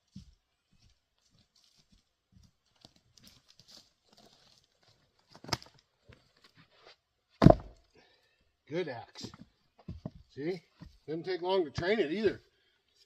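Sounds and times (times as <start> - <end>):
faint rustling and shuffling: 0.0 - 5.2.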